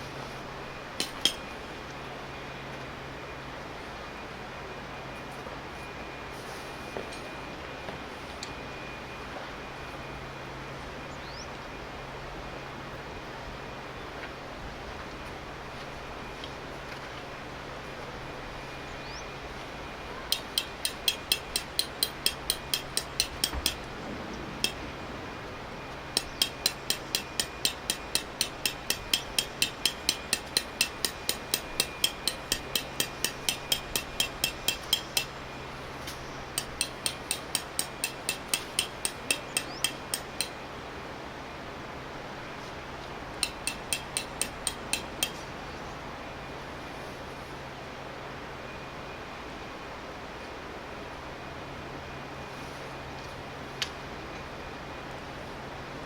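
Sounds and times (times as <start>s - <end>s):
sharp clicking taps: 1.0s - 1.5s, 20.3s - 24.8s, 26.1s - 35.4s, 36.1s - 40.6s, 43.4s - 45.4s.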